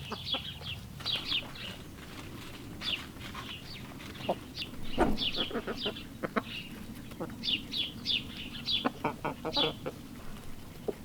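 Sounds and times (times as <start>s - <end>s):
poultry peeping: 0.0s - 11.0s.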